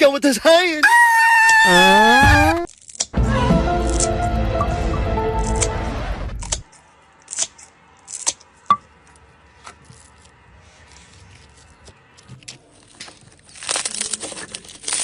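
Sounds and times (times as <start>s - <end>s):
background music: 3.2s - 6.6s
slime clicking and crackling: 12.4s - 15.0s.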